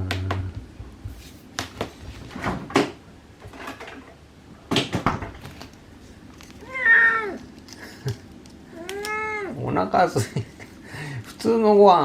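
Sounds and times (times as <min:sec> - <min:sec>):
cupboard door knocks and clatters: 0:04.7 - 0:05.4
cat meowing: 0:06.6 - 0:07.5, 0:08.7 - 0:09.6.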